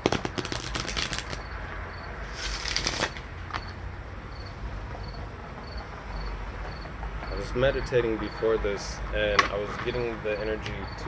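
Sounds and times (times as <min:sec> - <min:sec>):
cards being shuffled: 0:00.0 - 0:01.5, 0:02.4 - 0:03.2.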